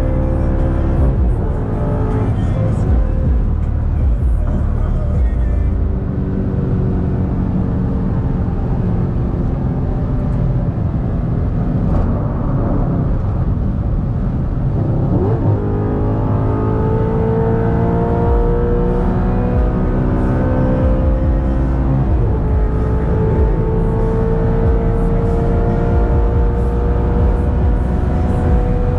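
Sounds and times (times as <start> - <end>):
car engine accelerating: 0.0 - 28.9.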